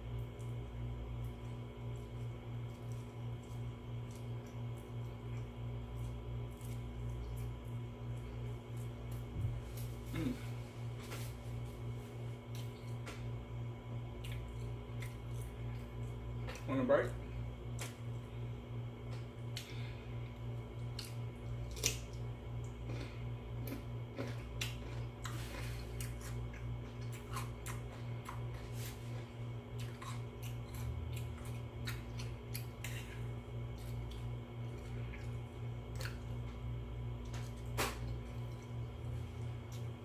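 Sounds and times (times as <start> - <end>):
chewing: 1.2 - 9.2, 14.1 - 16.7, 20.8 - 36.6.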